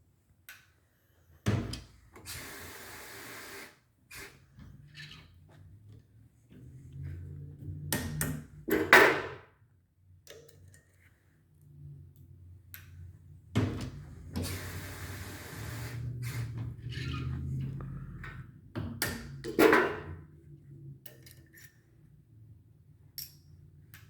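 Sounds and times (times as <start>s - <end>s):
air hissing: 14.4s - 16.6s.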